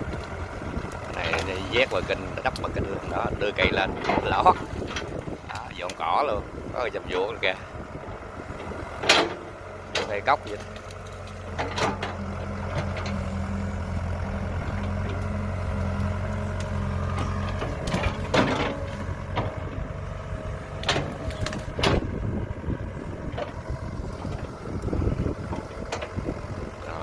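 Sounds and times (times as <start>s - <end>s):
excavator diesel engine running: 0.0s - 27.0s
excavator digging knocks: 9.0s - 13.3s, 16.4s - 19.9s, 20.7s - 22.2s.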